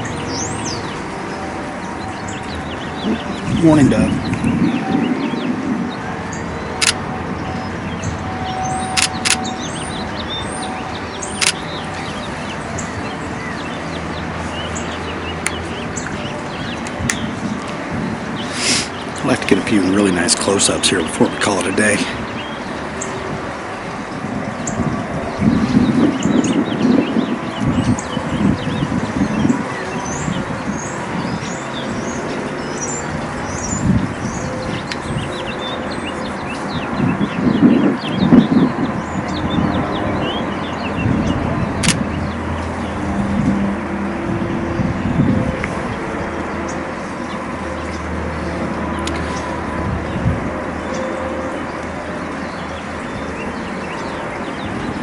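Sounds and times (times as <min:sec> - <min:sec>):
small birds chirping: 0:01.9 - 0:23.2
steady low rumble: 0:03.0 - 0:08.3
camera shutter clicks: 0:11.4 - 0:11.6, 0:41.8 - 0:42.0.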